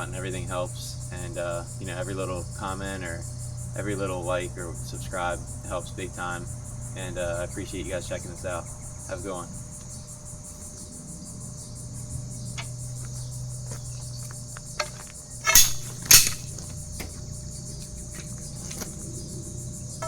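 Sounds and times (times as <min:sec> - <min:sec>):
crickets chirping: 0:00.0 - 0:20.0
sharp knocks: 0:15.4 - 0:17.2.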